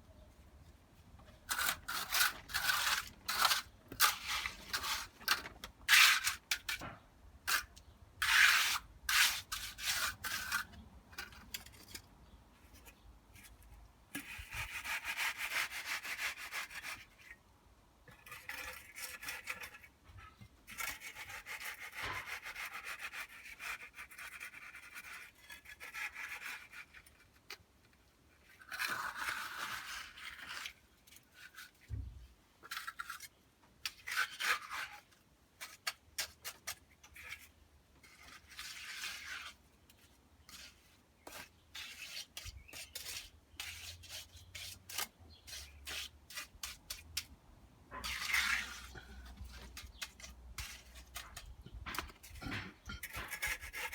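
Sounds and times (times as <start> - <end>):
tool scraping wet concrete: 1.4 - 6.8, 7.5 - 11.6, 28.5 - 31.9, 32.6 - 47.3, 47.9 - 53.9.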